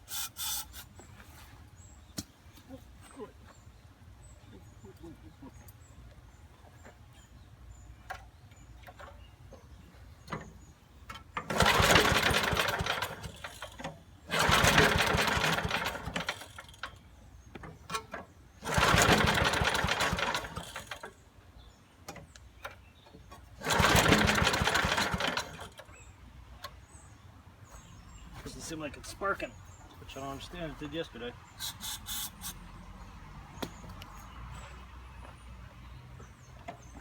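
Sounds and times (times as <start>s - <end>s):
small engine cranking: 11.4s - 17.0s, 17.9s - 21.2s, 23.5s - 26.0s.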